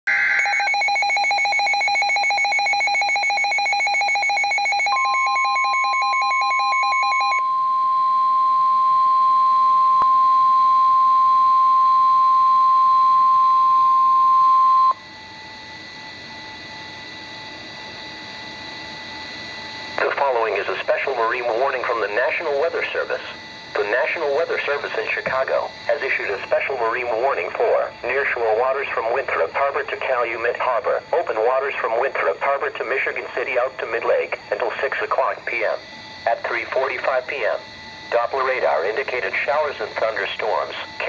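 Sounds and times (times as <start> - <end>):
steady warning alarm tone: 0.0 - 41.0
rapidly pulsing alarm beep: 0.1 - 41.0
faint radio hiss: 20.0 - 41.0.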